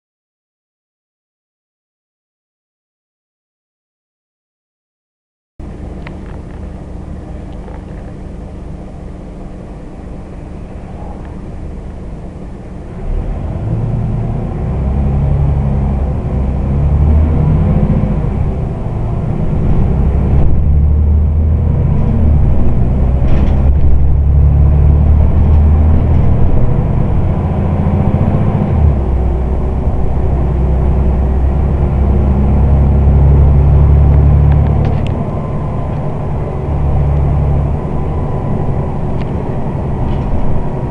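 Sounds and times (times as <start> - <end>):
bus engine: 5.6 - 40.9.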